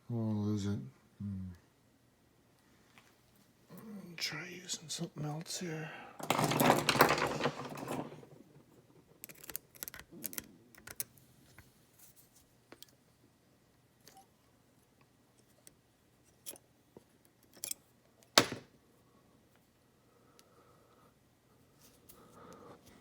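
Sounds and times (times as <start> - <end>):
lock picks clicking and scraping: 9.2 - 11.2, 15.4 - 18.4.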